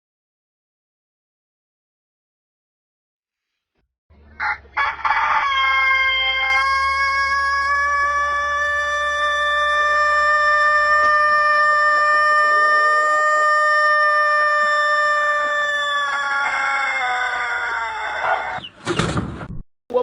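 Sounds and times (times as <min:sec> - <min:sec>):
rooster crowing: 0:04.4 - 0:18.6.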